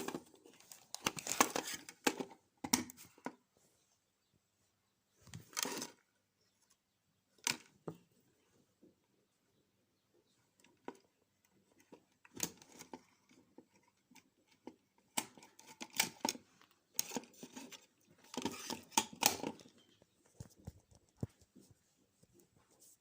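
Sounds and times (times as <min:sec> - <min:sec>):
objects clicking and rustling: 0:10.6 - 0:21.5.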